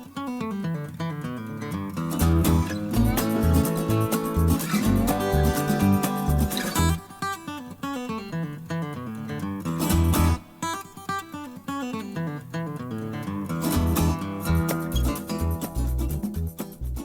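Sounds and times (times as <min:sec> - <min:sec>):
acoustic guitar melody: 0:00.0 - 0:17.0
steady bass beat: 0:02.2 - 0:07.0.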